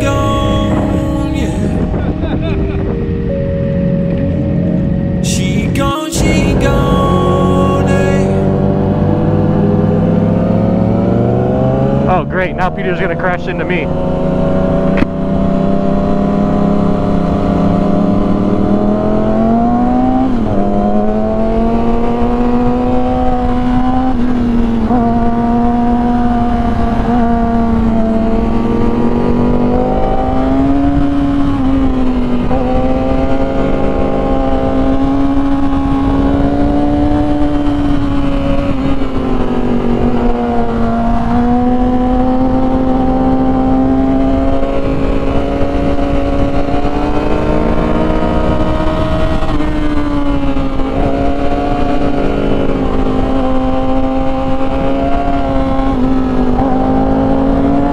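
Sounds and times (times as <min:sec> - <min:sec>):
wind rushing: 0:00.0 - 0:12.0
motorcycle engine running: 0:06.5 - 0:57.9.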